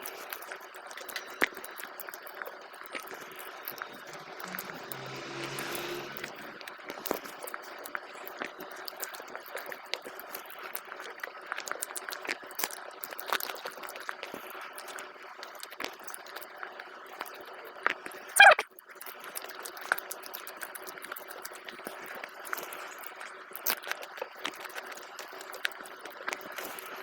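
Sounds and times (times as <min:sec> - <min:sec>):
wet chewing and lip smacking: 0:00.0 - 0:04.0, 0:07.1 - 0:27.0
low hum: 0:02.8 - 0:07.9.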